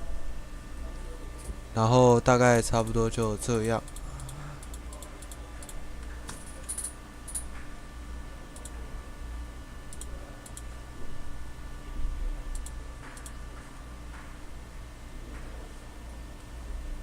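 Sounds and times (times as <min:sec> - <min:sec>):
steady low hum: 0:00.0 - 0:17.0
computer mouse clicks: 0:09.9 - 0:10.7, 0:12.5 - 0:13.4.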